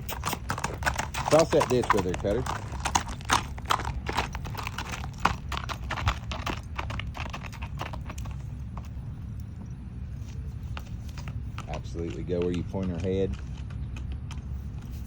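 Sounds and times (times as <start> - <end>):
horse hooves clip-clopping: 0.0 - 15.0.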